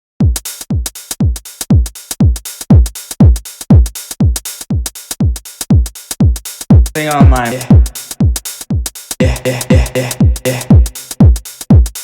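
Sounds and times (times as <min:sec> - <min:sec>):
drum machine kick: 0:00.2 - 0:12.0
hi-hat hits: 0:00.2 - 0:12.0
electronic dance music: 0:06.9 - 0:08.6, 0:09.2 - 0:12.0.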